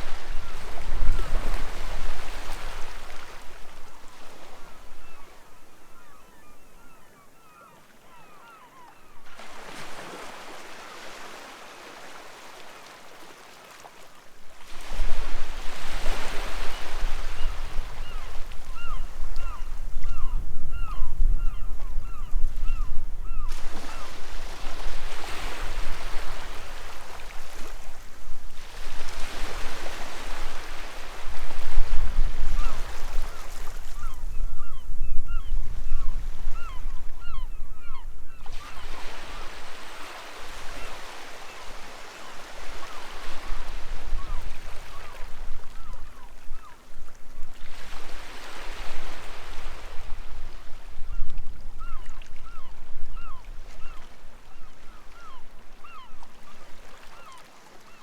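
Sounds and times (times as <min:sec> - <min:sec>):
gulls calling: 0:16.2 - 0:24.2
sea waves washing onto beach: 0:22.0 - 0:34.1.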